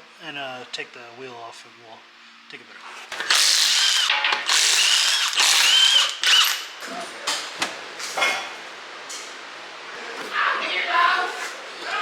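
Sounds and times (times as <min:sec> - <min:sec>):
impact wrench whining and hammering: 0:03.1 - 0:06.8.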